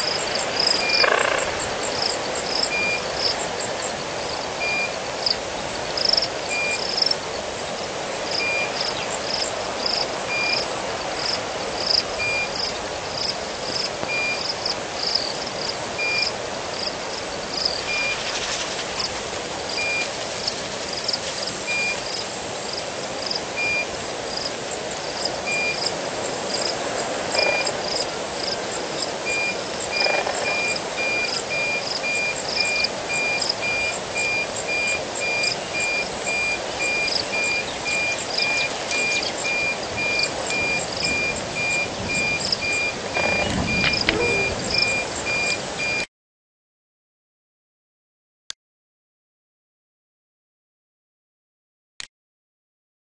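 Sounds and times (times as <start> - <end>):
frogs and insects chirping: 0.0 - 46.0
short repeating call: 42.8 - 46.0.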